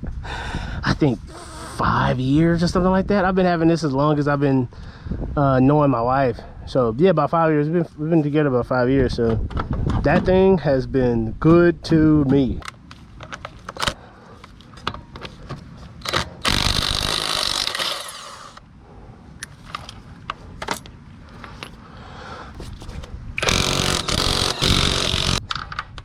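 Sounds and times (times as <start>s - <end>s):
impact wrench hammering: 23.4s - 25.4s.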